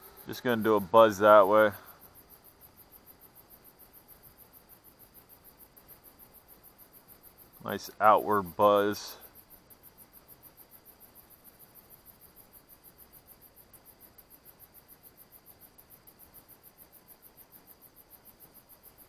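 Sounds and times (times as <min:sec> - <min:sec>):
steady high trill: 0:00.0 - 0:01.8
insect chirping: 0:00.0 - 0:19.0.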